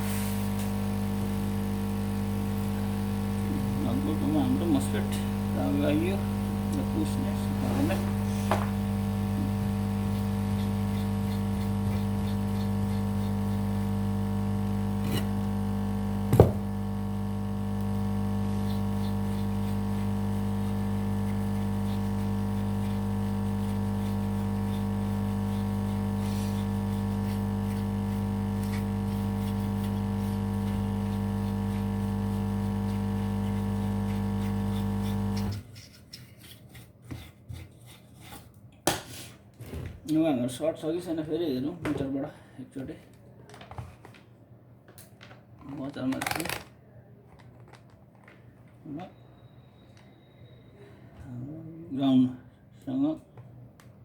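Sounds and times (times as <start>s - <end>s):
hot-air blower humming: 0.0s - 35.6s.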